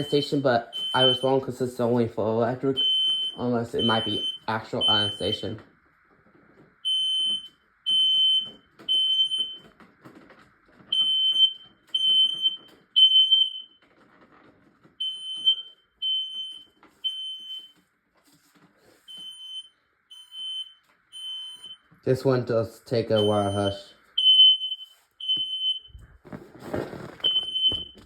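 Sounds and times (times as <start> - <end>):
smoke alarm beeping: 0.0 - 1.9, 2.7 - 5.6, 6.8 - 9.7, 10.9 - 13.8, 15.0 - 17.8, 19.1 - 22.2, 23.0 - 26.1, 27.2 - 28.0.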